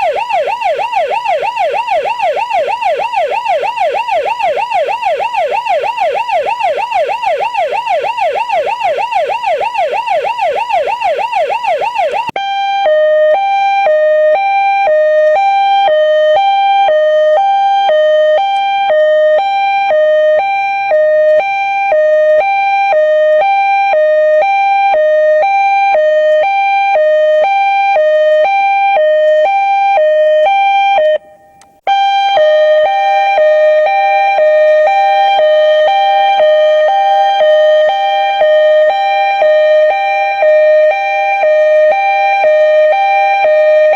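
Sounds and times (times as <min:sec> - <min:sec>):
police siren: 0:00.0 - 0:43.9.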